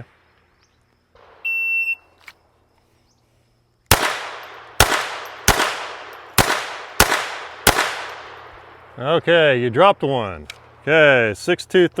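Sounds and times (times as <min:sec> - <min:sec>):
pistol shots: 0:03.9 - 0:08.9.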